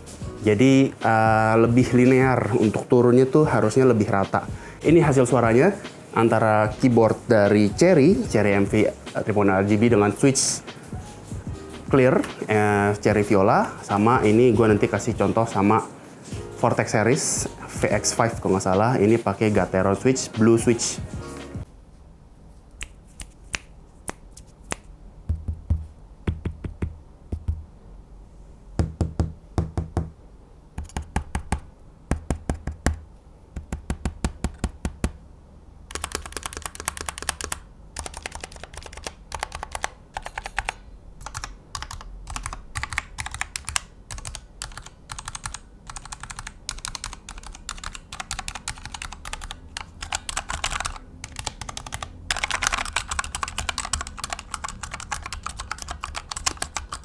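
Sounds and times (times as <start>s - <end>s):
fast clicky keyboard typing: 30.8s - 33.0s, 35.9s - 57.0s.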